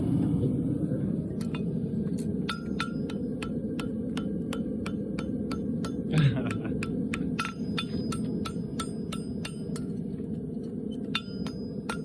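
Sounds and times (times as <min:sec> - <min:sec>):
low rushing noise: 0:00.0 - 0:05.8
hammer striking horseshoe on anvil: 0:01.4 - 0:10.1, 0:10.9 - 0:12.0.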